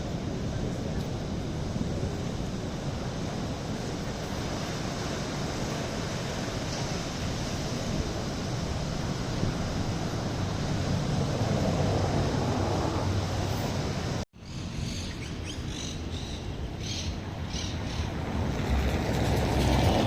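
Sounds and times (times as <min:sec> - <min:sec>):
surf rushing against rocks: 0:00.0 - 0:14.2
wave breaking: 0:01.7 - 0:14.2.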